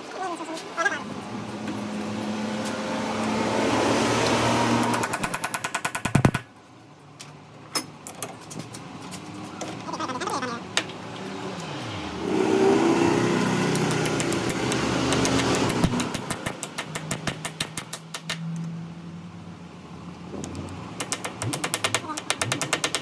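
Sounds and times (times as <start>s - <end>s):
scattered clicks: 13.7s - 18.4s.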